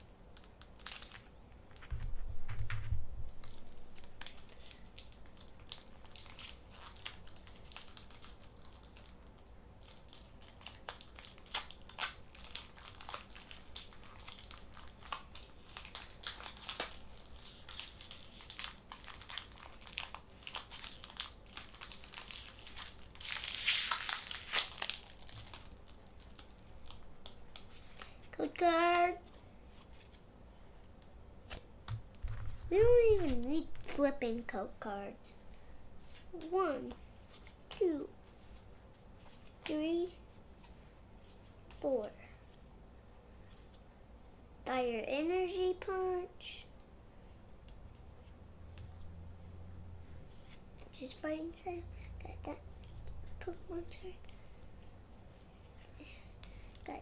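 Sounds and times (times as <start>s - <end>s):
foil wrapper crinkling and tearing: 0.4s - 2.0s, 3.4s - 28.2s.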